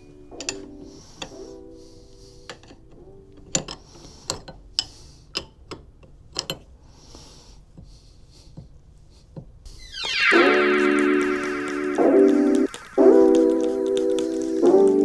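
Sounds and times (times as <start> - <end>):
metal parts clicking and knocking: 2.5 - 6.7.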